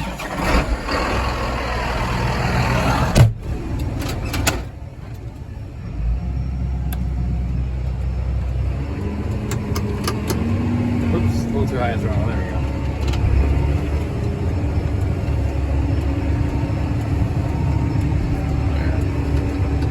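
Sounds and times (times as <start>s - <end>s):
tractor engine running: 0.0s - 19.9s.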